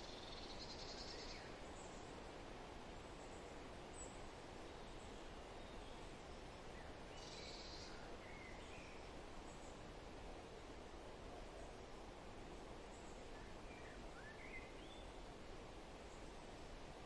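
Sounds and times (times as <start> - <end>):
faint outdoor background noise: 0.0 - 17.0.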